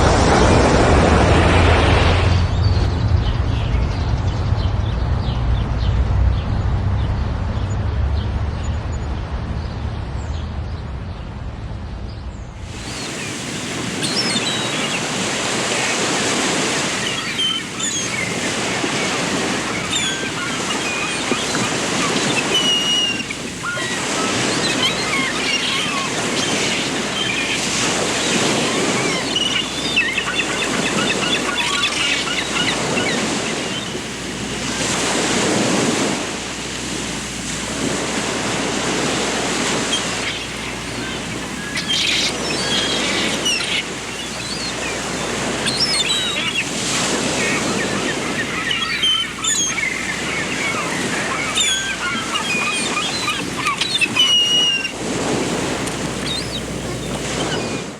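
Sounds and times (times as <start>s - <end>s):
waves washing: 0.0s - 3.5s, 12.5s - 57.9s
small birds chirping: 12.1s - 34.0s, 39.8s - 57.9s.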